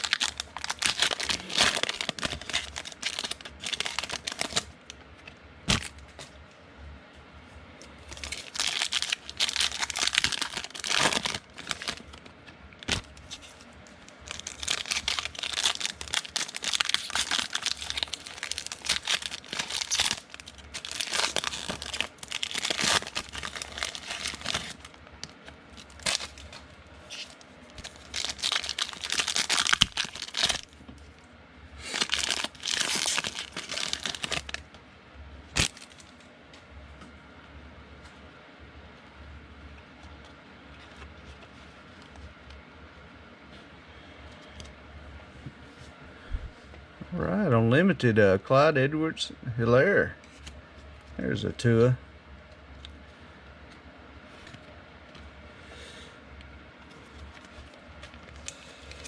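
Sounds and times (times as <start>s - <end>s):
card pack wrappers tearing: 0.0s - 4.8s, 5.7s - 6.2s, 8.0s - 30.8s, 31.8s - 34.6s, 35.5s - 36.2s.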